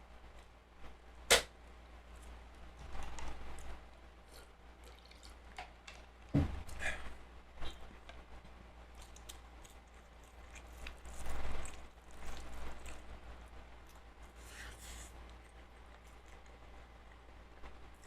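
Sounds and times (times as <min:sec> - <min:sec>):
sharp click: 0:01.3 - 0:01.5
wet chewing sounds: 0:02.1 - 0:06.8, 0:08.8 - 0:18.0.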